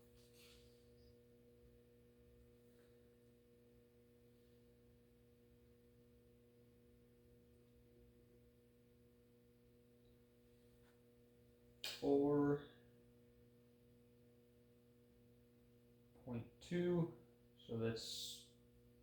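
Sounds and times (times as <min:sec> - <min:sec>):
ceiling fan motor humming: 0:00.0 - 0:19.0.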